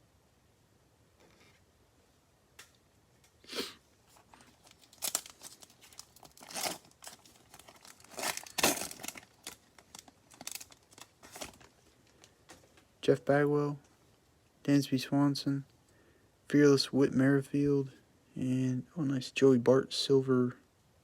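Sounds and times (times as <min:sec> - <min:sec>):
foil wrappers tearing and crinkling: 0:04.1 - 0:12.3.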